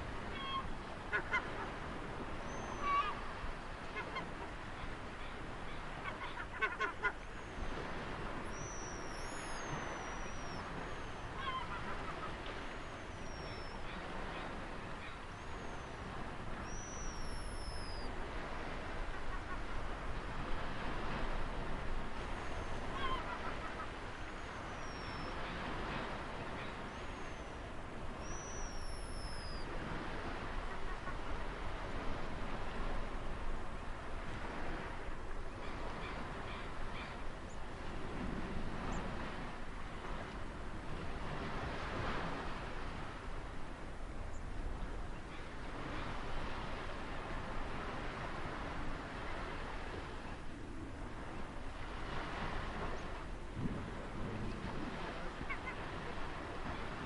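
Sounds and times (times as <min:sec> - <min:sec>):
ocean surf: 0:00.0 - 0:57.0
lower bird calls: 0:00.3 - 0:01.6, 0:02.4 - 0:03.2, 0:08.5 - 0:16.0, 0:16.6 - 0:18.1, 0:22.4 - 0:29.8
high whistling bird calls: 0:08.5 - 0:11.1, 0:16.7 - 0:18.1, 0:28.2 - 0:29.7.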